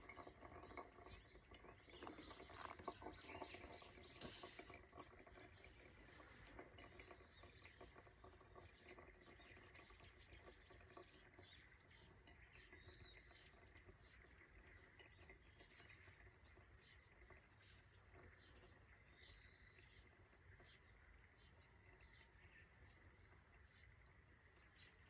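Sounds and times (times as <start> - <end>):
small birds chirping: 0.1 - 4.7
sharp click: 4.2 - 4.7.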